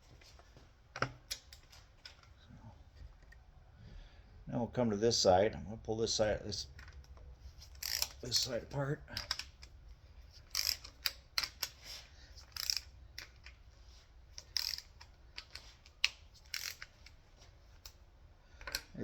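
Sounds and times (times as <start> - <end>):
metallic clicks of hand tools: 6.8 - 8.5, 9.1 - 9.8, 10.4 - 11.8, 12.4 - 13.6, 14.4 - 17.2, 18.6 - 19.0
clattering tools and parts: 6.8 - 18.0, 18.6 - 19.0.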